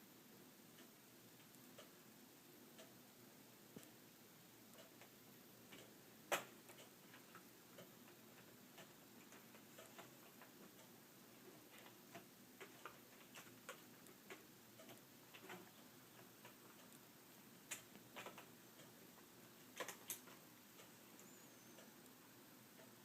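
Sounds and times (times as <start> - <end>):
small clicks from laptop repair: 19.7 - 20.4.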